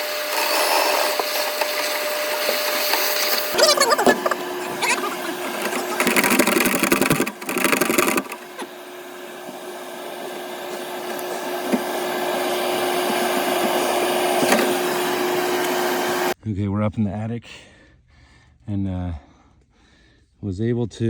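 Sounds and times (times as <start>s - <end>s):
even whirring: 0.0s - 16.4s
steady machine hum: 0.0s - 16.4s
rough scraping and rubbing: 0.1s - 8.8s.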